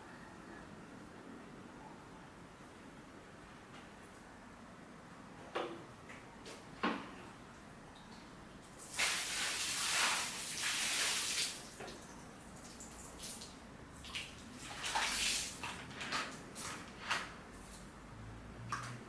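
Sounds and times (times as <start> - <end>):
water gushing: 8.8 - 12.0, 14.0 - 16.7
water splashes: 8.8 - 16.8.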